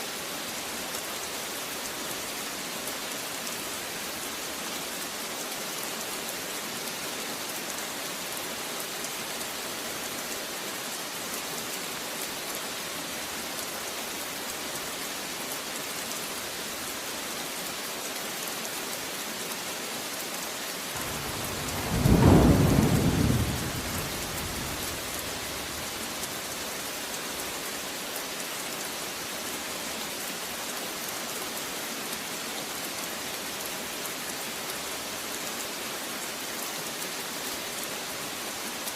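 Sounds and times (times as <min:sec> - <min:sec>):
heavy rain hissing: 0:20.9 - 0:28.0
thunder clap rumbling: 0:21.0 - 0:26.4.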